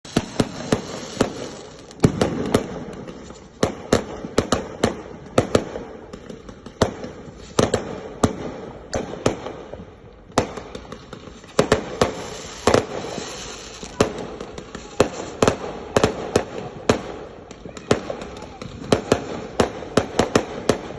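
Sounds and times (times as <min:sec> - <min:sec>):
crackling hiss: 0:00.0 - 0:03.6, 0:10.9 - 0:16.0
fireworks banging: 0:00.0 - 0:20.9.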